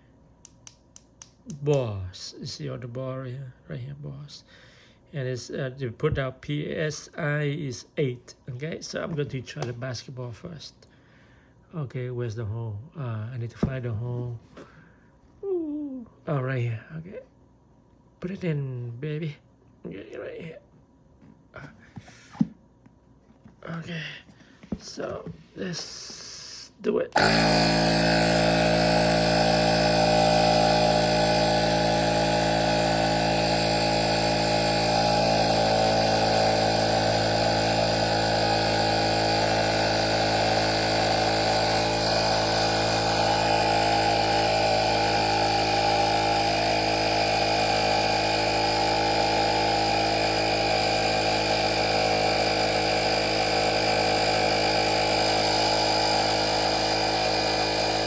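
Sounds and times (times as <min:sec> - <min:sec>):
small compressor buzzing drone: 0:27.2 - 0:58.0.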